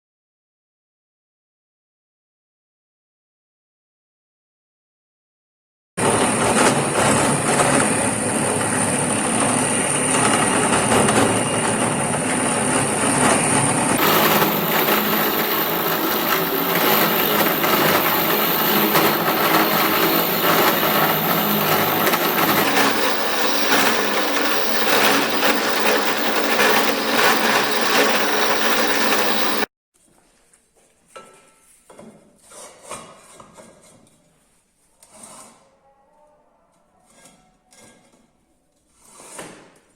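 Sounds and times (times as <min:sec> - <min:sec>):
power tools running: 0:14.0 - 0:29.7.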